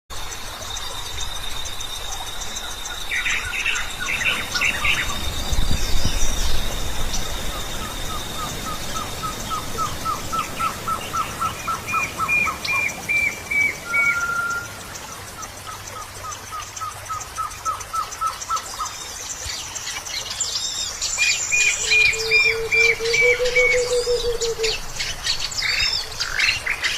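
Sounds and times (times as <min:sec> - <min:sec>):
pulsing insect trill: 0:00.1 - 0:17.2
birds calling: 0:00.6 - 0:19.6, 0:20.5 - 0:26.9.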